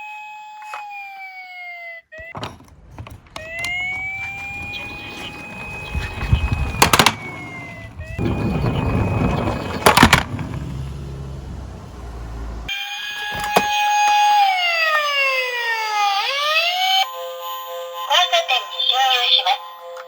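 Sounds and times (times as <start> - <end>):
synthesized police siren: 0.0 - 2.3, 3.4 - 17.1
sharp clatters: 2.3 - 12.6
toy car rolling rumble: 2.3 - 12.7.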